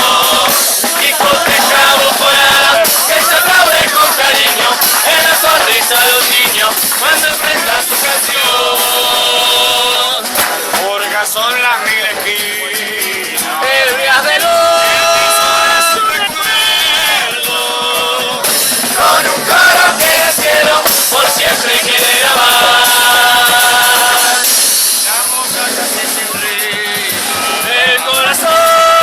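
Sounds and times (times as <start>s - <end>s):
chorus singing in unison: 0.0s - 29.0s
drums and cymbals: 0.0s - 29.0s.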